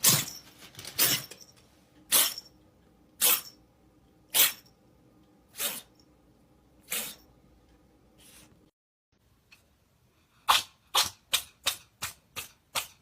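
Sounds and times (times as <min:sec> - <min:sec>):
cat sneezing: 0:02.1 - 0:02.4, 0:03.2 - 0:03.5, 0:04.3 - 0:04.6, 0:05.5 - 0:05.9, 0:06.8 - 0:07.3.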